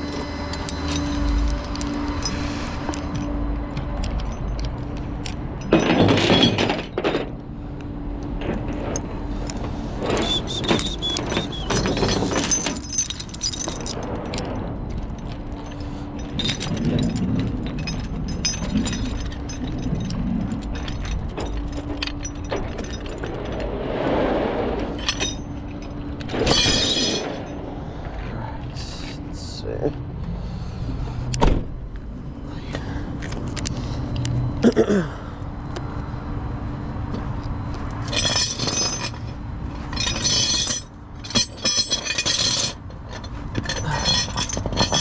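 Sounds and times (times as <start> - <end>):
metal chains clanking: 0.0 - 7.4, 8.4 - 23.9, 24.8 - 27.6, 38.0 - 45.0
truck engine humming: 0.0 - 45.0.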